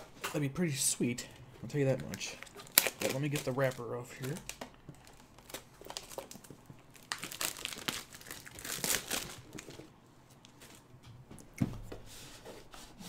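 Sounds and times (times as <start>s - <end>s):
plastic wrapper crinkling: 1.7s - 9.9s.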